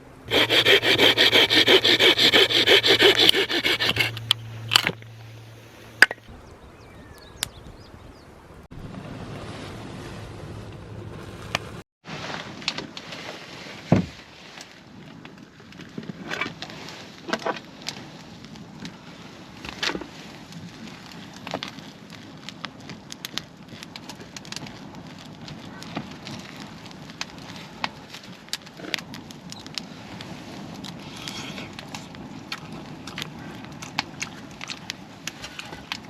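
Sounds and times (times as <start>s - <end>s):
campfire crackling and popping: 19.6s - 36.0s.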